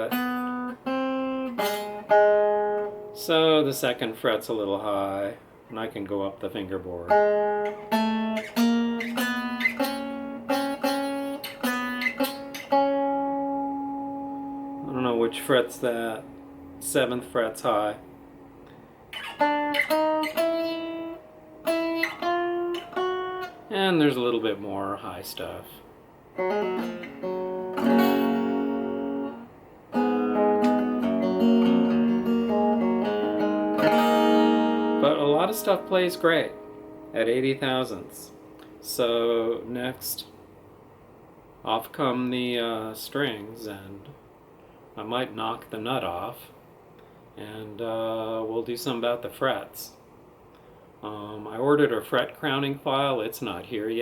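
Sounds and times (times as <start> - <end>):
guitar notes plucked: 0.0 - 3.9, 7.0 - 24.3, 26.3 - 39.7.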